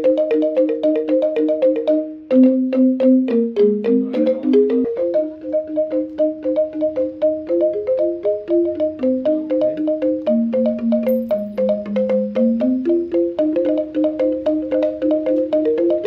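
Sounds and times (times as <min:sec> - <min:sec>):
music of short struck notes: 0:07.6 - 0:13.0.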